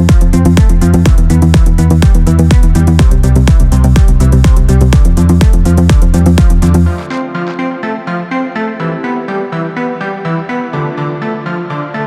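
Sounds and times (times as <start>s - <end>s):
steady kick drum: 0.0s - 7.1s
electronic dance music: 0.0s - 12.0s.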